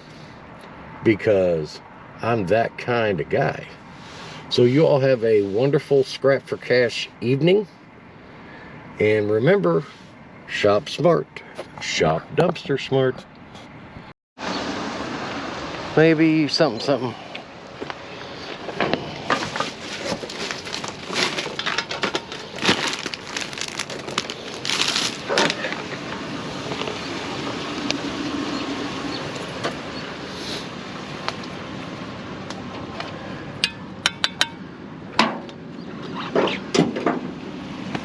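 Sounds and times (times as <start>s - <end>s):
objects clinking and clattering: 19.3s - 25.8s.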